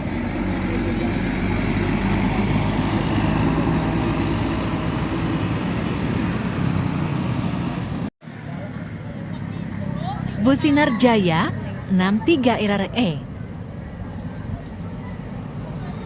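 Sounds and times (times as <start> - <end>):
bus engine droning: 0.0 - 16.0
traffic noise: 0.0 - 16.0.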